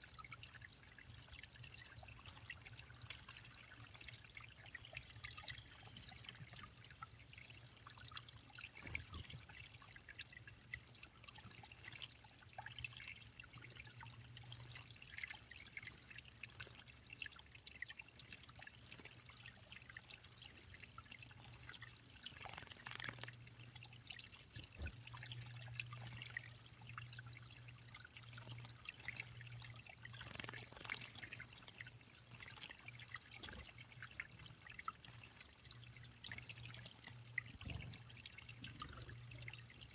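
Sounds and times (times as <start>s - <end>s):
water dripping into a pond: 0.0s - 39.9s
water trickling: 0.0s - 39.9s.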